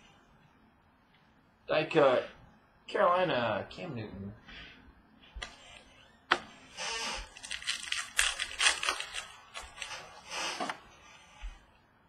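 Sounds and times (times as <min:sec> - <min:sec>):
wrapper being torn and crinkled: 0:07.2 - 0:10.1
cards being handled: 0:07.3 - 0:10.7.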